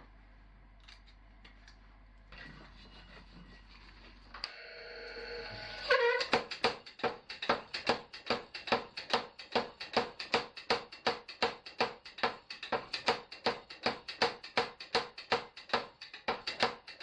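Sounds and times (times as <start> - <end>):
hammer striking steel on anvil: 6.2 - 17.0.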